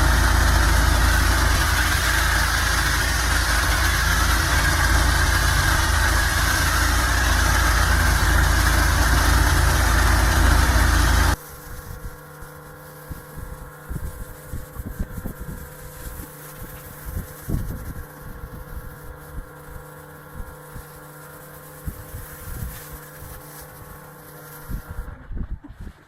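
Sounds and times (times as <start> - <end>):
engine humming: 0.0 - 11.4.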